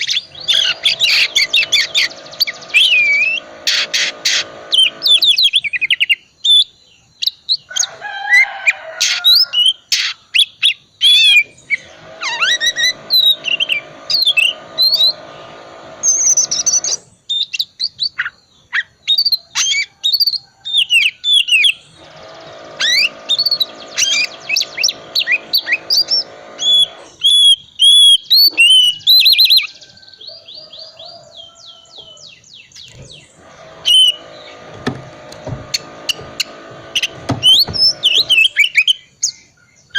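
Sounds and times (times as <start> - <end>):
steady buzz: 0.0 - 5.6, 11.4 - 17.1, 21.8 - 27.6, 32.9 - 38.8.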